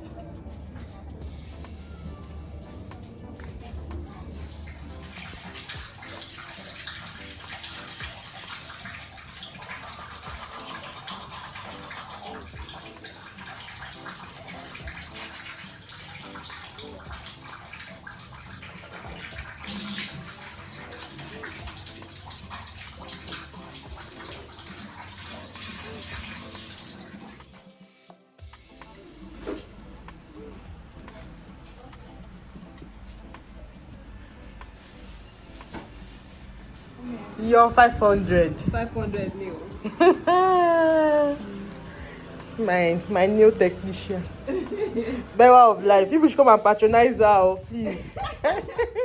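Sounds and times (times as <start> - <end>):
water running and splashing: 2.7 - 27.6, 34.8 - 49.0.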